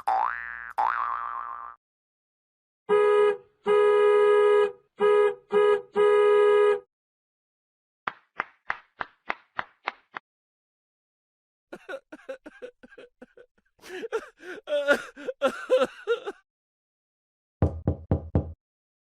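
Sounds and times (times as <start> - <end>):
buzzy horn-like tone: 2.9 - 6.8.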